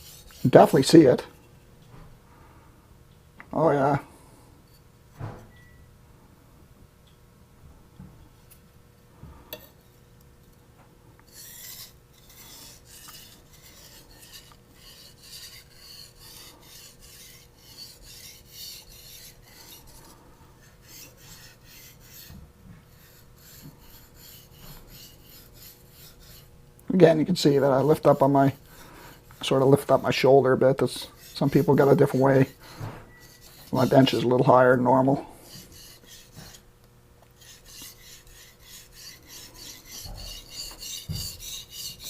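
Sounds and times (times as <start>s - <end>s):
knife scraping on whetstone: 0.0s - 1.4s, 11.3s - 26.5s, 27.5s - 34.7s, 35.3s - 36.7s, 37.3s - 42.0s.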